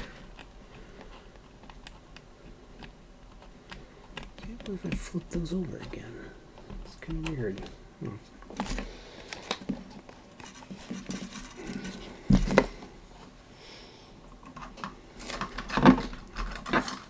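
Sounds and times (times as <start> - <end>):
tools clicking and scraping: 0.0 - 7.8, 8.4 - 12.8.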